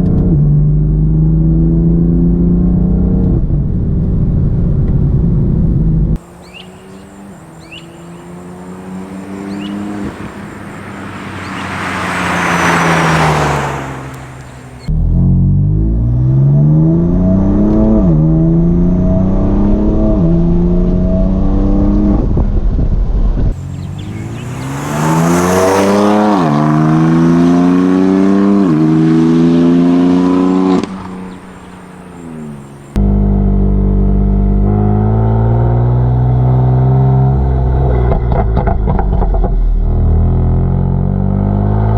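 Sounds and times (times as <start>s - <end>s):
car engine accelerating hard: 0.0s - 41.9s
car passing by: 6.2s - 14.9s, 23.6s - 33.0s.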